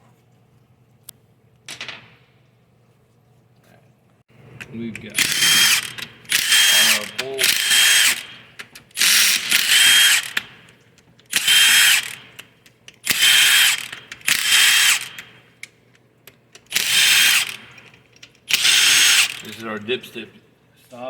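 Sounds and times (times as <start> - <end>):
bolts and socket clicking: 4.6 - 19.7
power driver motor whine: 5.0 - 10.7, 11.3 - 12.4, 13.1 - 15.3, 16.8 - 17.8, 18.5 - 19.6.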